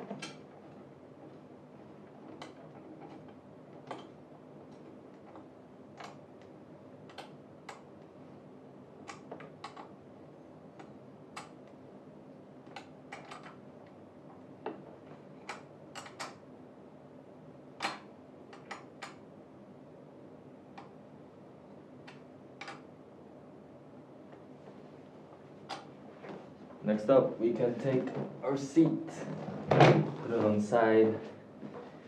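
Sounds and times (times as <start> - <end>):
steady low hum: 0.0 - 32.0
clicks and taps of metal parts: 12.7 - 13.6, 15.4 - 16.4, 17.8 - 19.2, 22.1 - 22.8.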